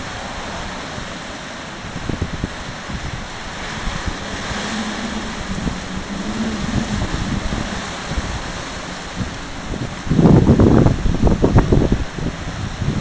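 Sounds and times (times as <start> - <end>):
strong gusting wind on microphone: 0.0 - 13.0
low wavering tone: 3.8 - 10.6.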